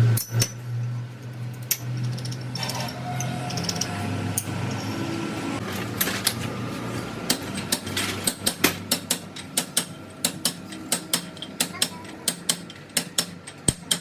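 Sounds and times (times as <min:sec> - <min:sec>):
sharp metallic clicks and taps: 0:07.3 - 0:14.0.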